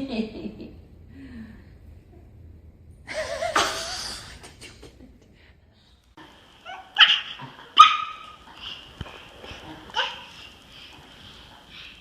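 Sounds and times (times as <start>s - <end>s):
dog yelping: 6.6s - 8.8s, 9.6s - 10.6s.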